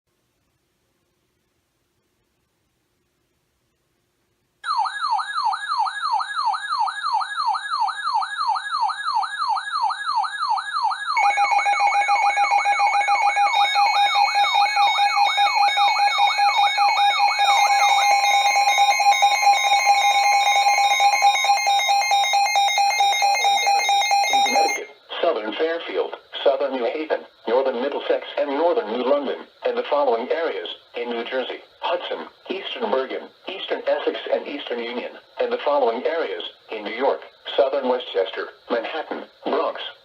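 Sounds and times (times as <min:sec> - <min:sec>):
warbling siren: 0:04.6 - 0:24.9
steady alarm tones: 0:04.6 - 0:39.9
pulsed high beeping: 0:10.3 - 0:25.0.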